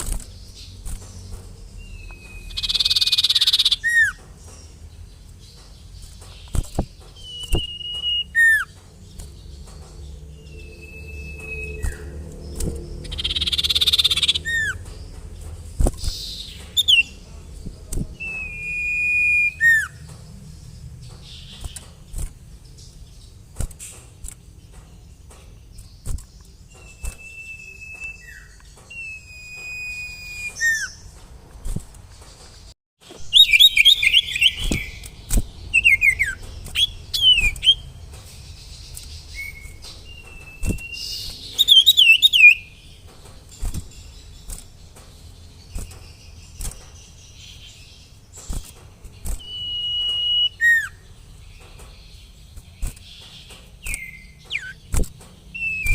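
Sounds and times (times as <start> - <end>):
songbird singing: 0.0 - 55.9.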